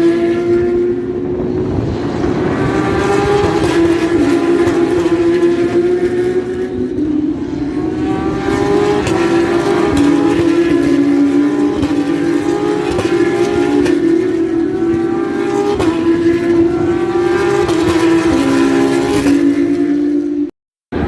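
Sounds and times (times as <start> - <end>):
racing car engines at high revs: 0.0 - 21.0.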